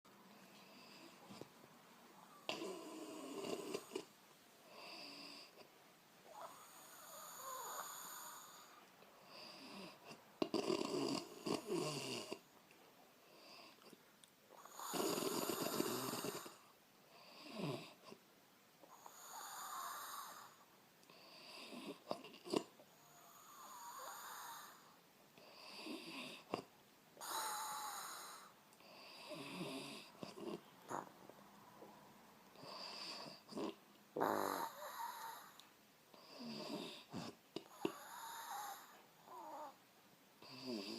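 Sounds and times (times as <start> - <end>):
woman snoring: 2.3 - 4.1, 6.3 - 12.4, 14.6 - 16.6, 17.2 - 18.1, 18.9 - 26.6, 27.2 - 31.1, 32.6 - 35.6, 36.2 - 39.8, 40.4 - 40.9.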